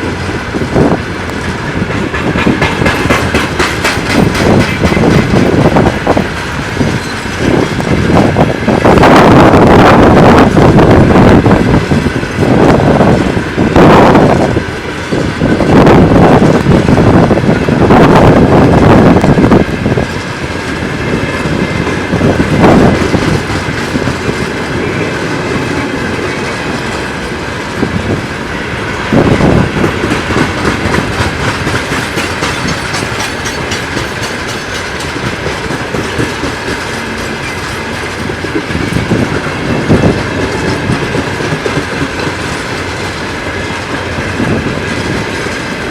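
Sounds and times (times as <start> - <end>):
freight train rolling rumble: 0.0 - 45.9
train wheels clattering over rail joints: 0.1 - 45.9.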